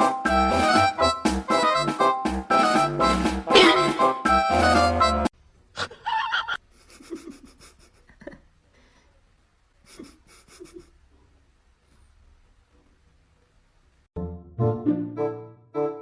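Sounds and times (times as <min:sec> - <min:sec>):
background music: 0:00.0 - 0:05.3, 0:14.2 - 0:16.0.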